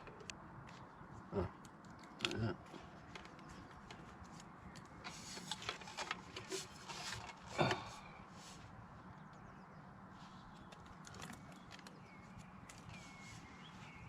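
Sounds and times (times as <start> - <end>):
light rustles and clicks: 1.6 - 8.0, 10.3 - 13.6.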